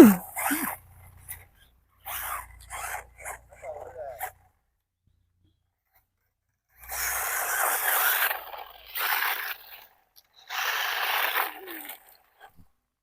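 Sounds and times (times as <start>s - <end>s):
rc car tyres spraying gravel: 6.8s - 12.6s.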